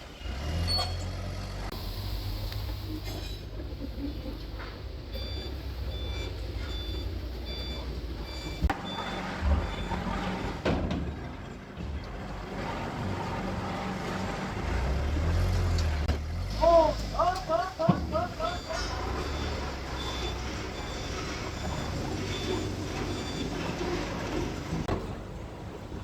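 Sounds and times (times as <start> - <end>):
forklift engine running: 0.0 - 26.0
reversing alarm beeping: 1.7 - 10.6, 17.3 - 24.7.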